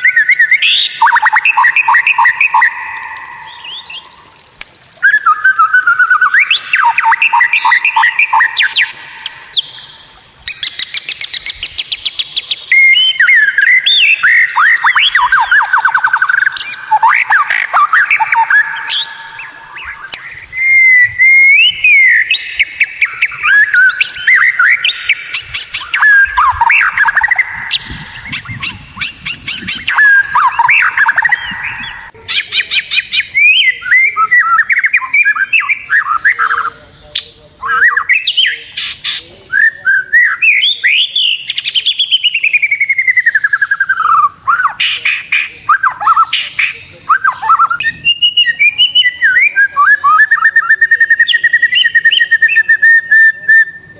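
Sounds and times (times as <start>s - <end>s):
songbird singing whistled notes: 0.0s - 53.9s.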